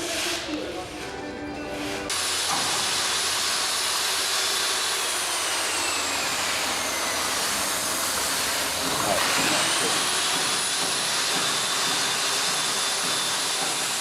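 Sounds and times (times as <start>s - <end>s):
locomotive venting steam hiss: 7.3s - 14.0s.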